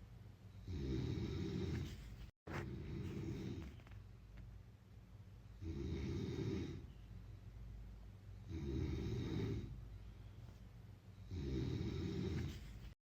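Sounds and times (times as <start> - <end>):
quiet breathing: 0.5 - 4.0, 8.2 - 13.0
person snoring: 0.6 - 3.9, 5.6 - 6.9, 8.4 - 9.8, 11.2 - 12.9.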